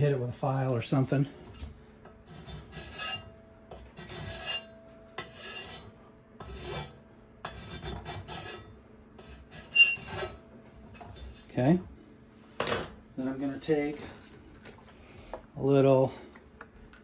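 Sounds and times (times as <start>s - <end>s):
hand file rasping on metal: 2.2s - 10.4s.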